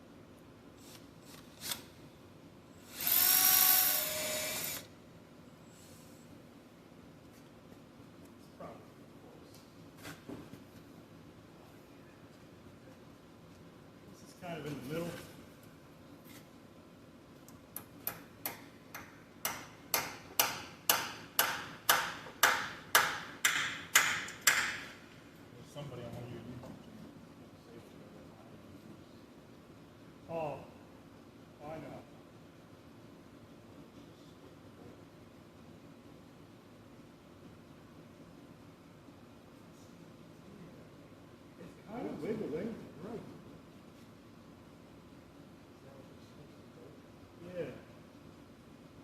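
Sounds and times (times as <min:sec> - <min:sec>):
electric hand drill drilling: 0:02.8 - 0:04.9
hammer tapping on steel: 0:18.0 - 0:24.9.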